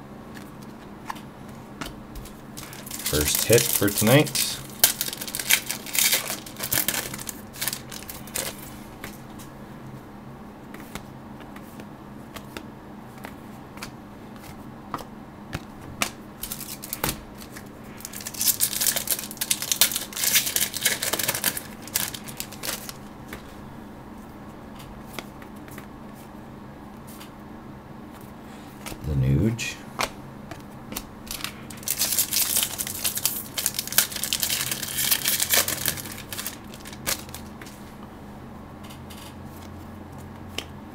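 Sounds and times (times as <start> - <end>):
steady low hum: 0.0 - 40.9
cards clicking and rustling: 0.3 - 9.5, 10.7 - 23.5, 30.0 - 37.8.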